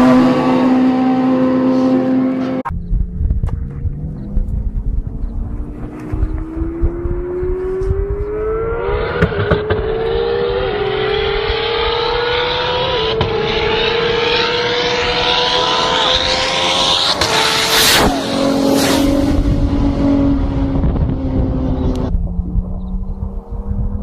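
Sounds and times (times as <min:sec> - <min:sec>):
engine accelerating hard: 0:00.0 - 0:24.0
wind buffeting microphone: 0:02.7 - 0:12.3, 0:17.2 - 0:24.0.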